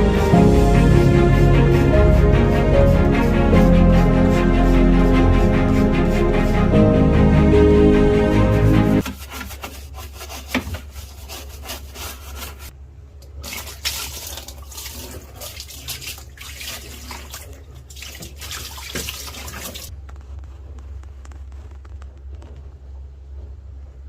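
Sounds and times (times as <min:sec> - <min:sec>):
low hum: 0:00.0 - 0:09.0
water running and splashing: 0:13.4 - 0:19.9.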